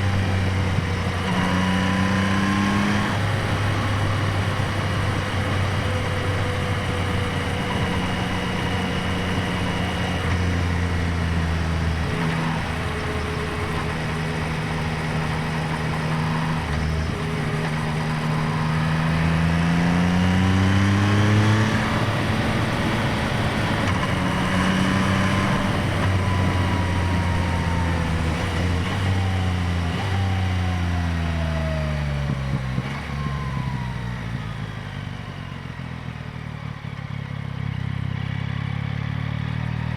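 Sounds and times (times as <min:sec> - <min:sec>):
motorcycle engine revving: 0:00.0 - 0:36.2.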